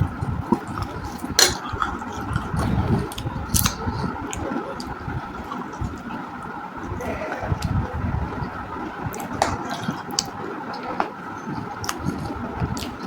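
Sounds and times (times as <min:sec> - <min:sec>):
chewing: 0:00.5 - 0:06.2, 0:09.1 - 0:13.0.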